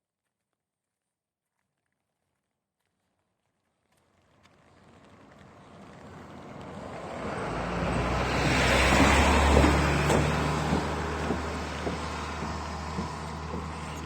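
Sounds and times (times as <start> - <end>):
vehicle passing by: 4.5 - 14.0.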